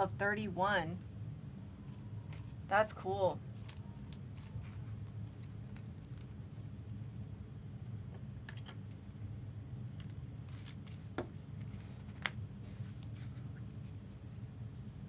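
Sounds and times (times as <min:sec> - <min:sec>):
steady low hum: 0:00.0 - 0:15.0
cards clicking and rustling: 0:03.6 - 0:07.0, 0:10.0 - 0:14.0.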